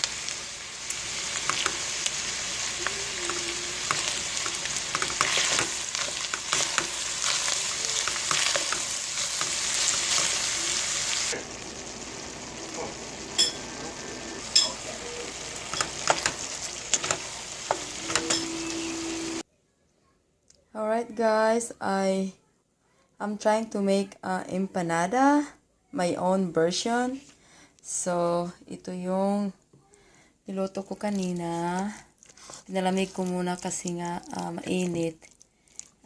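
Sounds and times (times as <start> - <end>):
food sizzling in a frying pan: 0.0 - 19.4
utensil clicking against pan: 1.4 - 1.8, 3.2 - 7.0, 15.7 - 18.4.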